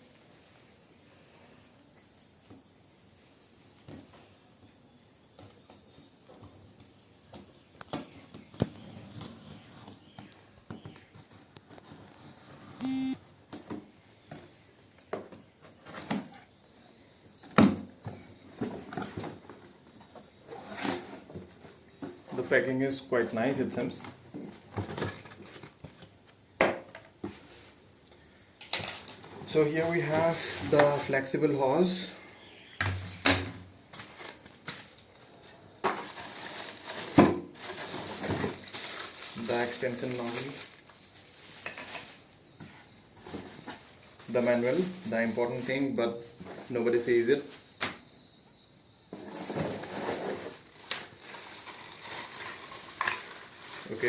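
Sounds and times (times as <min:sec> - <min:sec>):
box and packing being handled: 0:33.9 - 0:45.8
packaging rustling: 0:36.0 - 0:42.3, 0:50.3 - 0:54.0.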